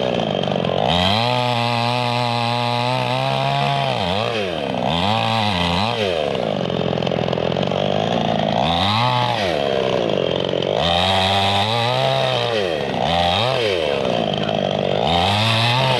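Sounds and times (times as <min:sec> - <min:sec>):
chainsaw engine revving: 0:00.0 - 0:15.9.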